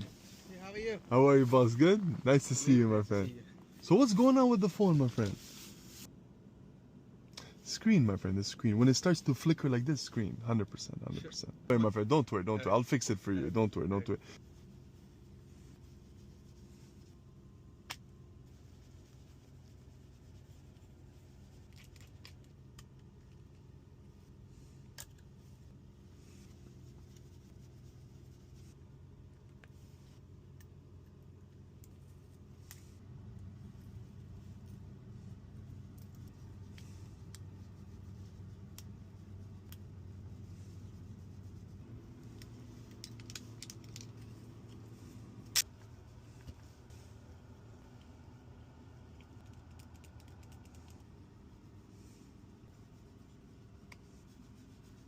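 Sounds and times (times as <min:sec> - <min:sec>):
steady low hum: 0:00.0 - 0:55.0
small clicks of hand tools: 0:42.3 - 0:44.2.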